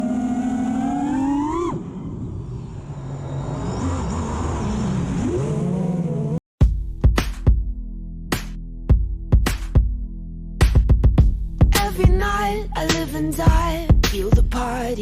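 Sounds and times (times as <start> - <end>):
drone motors whining: 0.0 - 6.4
music with heavy beat: 6.6 - 10.0, 10.6 - 12.3, 12.9 - 14.7.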